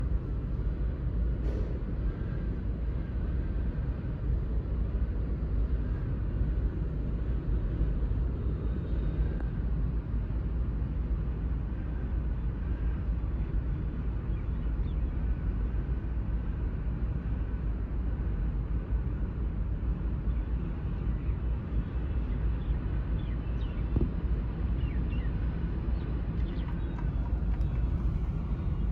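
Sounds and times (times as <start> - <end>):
distant road traffic rumble: 25.9 - 28.9.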